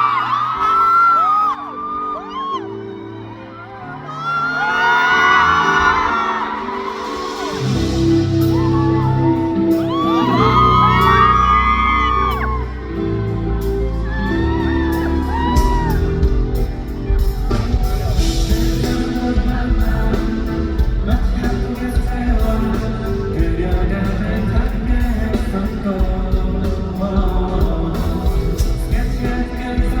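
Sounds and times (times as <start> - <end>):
crowd of fans screaming: 0.0 - 19.4
pop music over sound system: 4.2 - 30.0
drum beat: 15.3 - 30.0.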